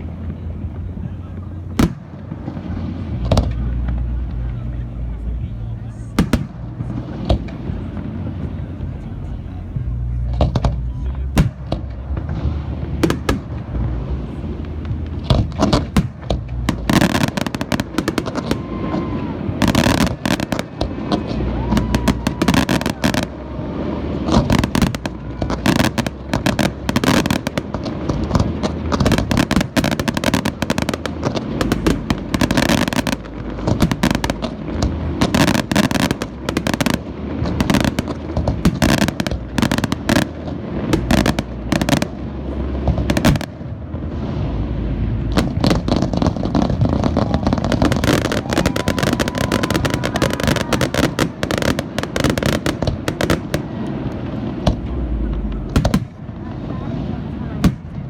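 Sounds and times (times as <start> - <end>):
low rumble: 0.0 - 58.0
firework shell bursts and booms: 24.0 - 56.4.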